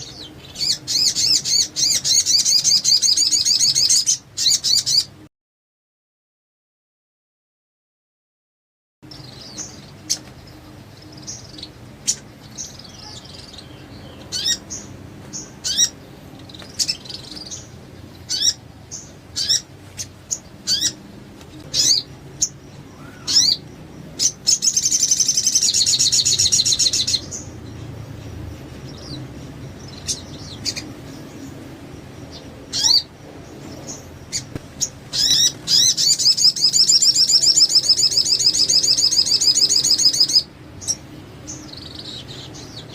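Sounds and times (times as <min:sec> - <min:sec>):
bird chirping and trilling: 0:00.0 - 0:05.2, 0:09.0 - 0:42.9.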